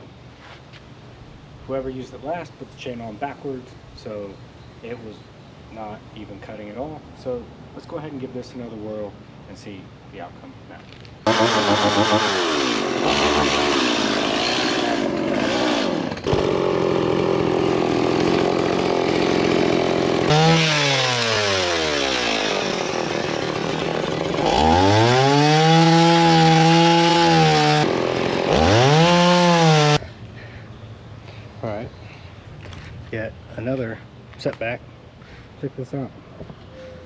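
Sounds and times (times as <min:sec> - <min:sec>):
chainsaw revving and cutting: 0:11.3 - 0:30.0.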